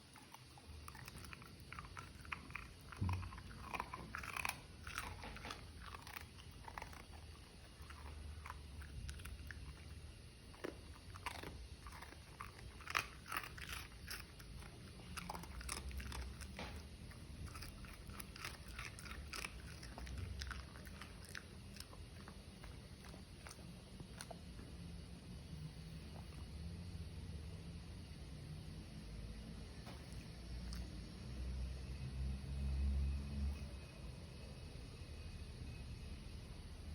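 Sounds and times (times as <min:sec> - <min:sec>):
dog crunching toast: 0:00.0 - 0:24.4.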